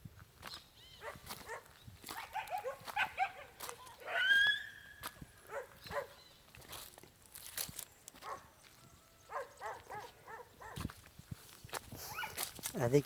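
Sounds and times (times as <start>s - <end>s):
dog yapping: 1.0s - 4.8s, 5.5s - 6.2s, 9.3s - 10.8s, 12.1s - 12.4s.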